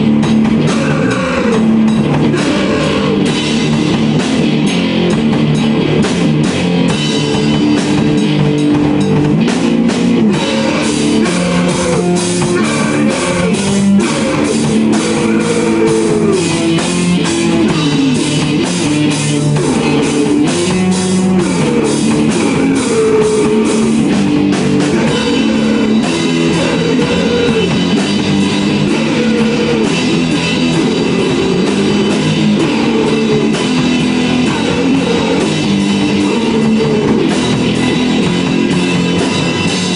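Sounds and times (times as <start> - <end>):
drum kit fast beat: 0.0 - 39.9
electric guitar bending line: 0.0 - 39.9.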